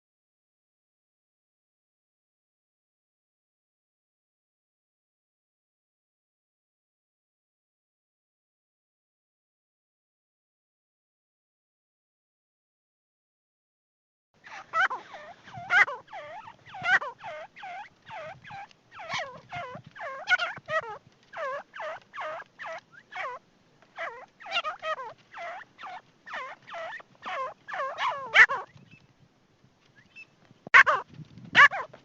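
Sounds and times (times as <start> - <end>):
partridge calling: 14.5 - 23.4, 24.0 - 29.1, 30.0 - 32.0.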